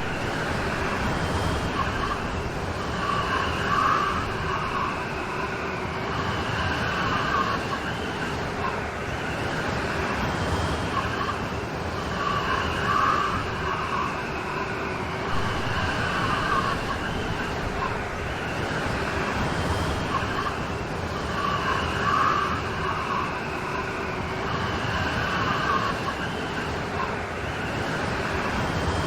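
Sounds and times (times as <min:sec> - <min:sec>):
heavy rain: 0:15.3 - 0:21.2.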